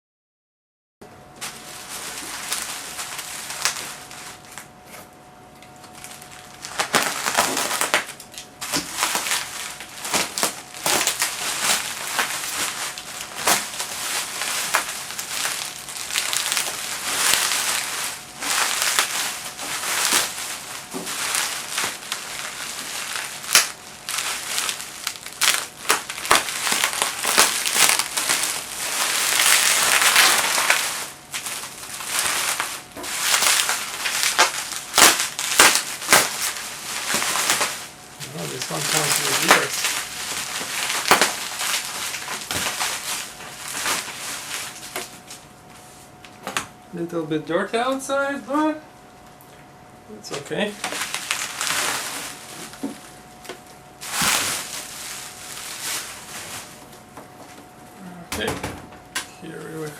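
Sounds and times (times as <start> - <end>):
packing material crinkling: 1.3 - 46.8, 50.2 - 58.1.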